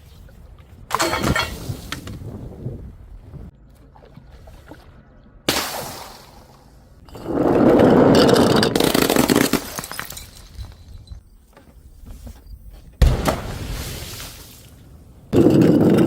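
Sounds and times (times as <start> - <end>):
glass shattering: 0.9 - 1.7, 9.0 - 11.1.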